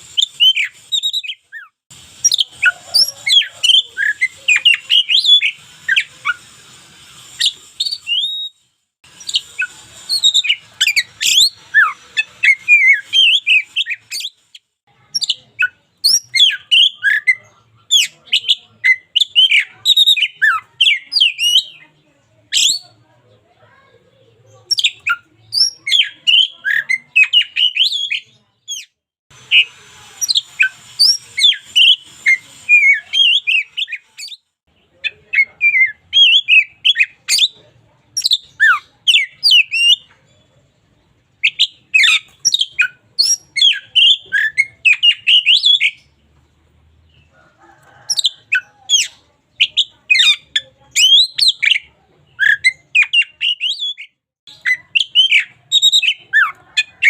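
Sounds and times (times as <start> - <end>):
bird singing whistles and chirps: 0.0 - 6.6, 7.3 - 14.6, 15.2 - 21.8, 24.7 - 34.4, 38.2 - 40.1, 41.4 - 46.0, 48.0 - 51.8, 52.4 - 56.9.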